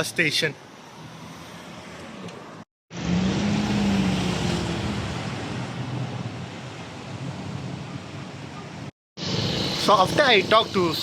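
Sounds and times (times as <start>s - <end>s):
street traffic: 0.0s - 11.0s
vehicle engine hum passing: 0.8s - 8.9s.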